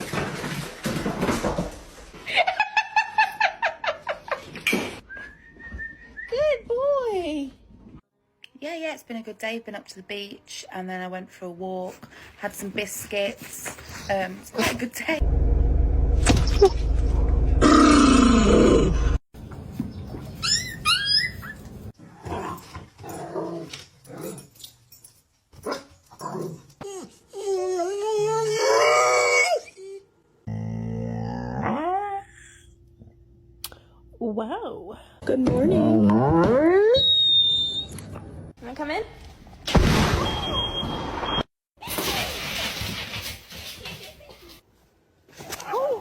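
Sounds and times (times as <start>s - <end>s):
dog whining: 20.4s - 21.6s.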